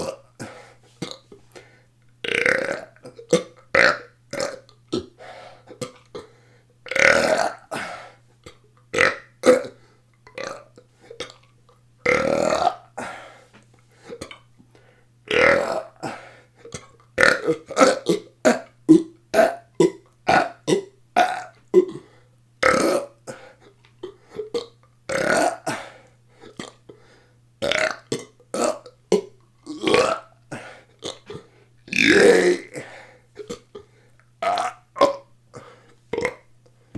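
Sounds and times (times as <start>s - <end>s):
person burping: 0.0s - 1.2s, 2.2s - 5.1s, 6.9s - 8.0s, 12.0s - 13.2s, 15.3s - 22.0s, 22.6s - 23.3s, 24.0s - 25.8s, 27.6s - 33.7s, 34.4s - 35.3s.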